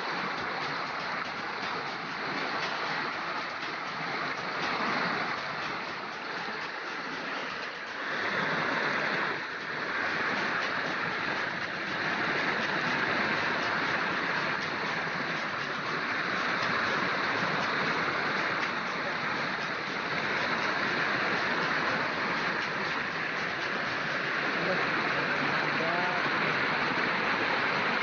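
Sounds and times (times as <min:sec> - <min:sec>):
flowing water rushing: 0:00.0 - 0:28.0.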